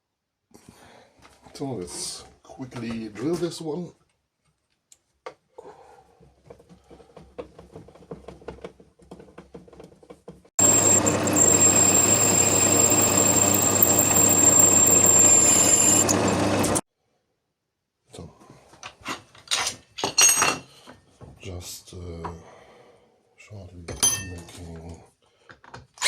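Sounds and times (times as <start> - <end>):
milling machine motor whining: 10.6 - 16.8.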